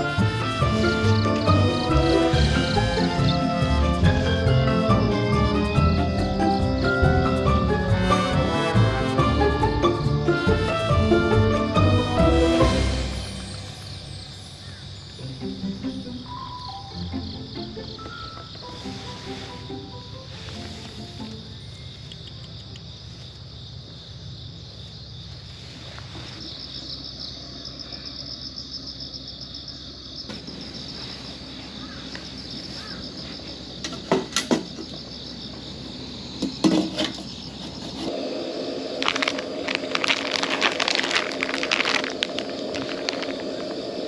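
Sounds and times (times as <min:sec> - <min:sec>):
insects chirping: 0:00.0 - 0:44.0
quick crackling clicks: 0:38.8 - 0:44.0.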